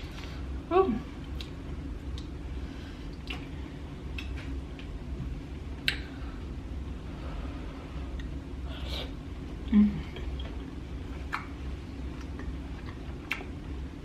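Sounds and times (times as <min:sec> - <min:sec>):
steady low hum: 0:00.0 - 0:14.0
chewing: 0:12.1 - 0:13.6.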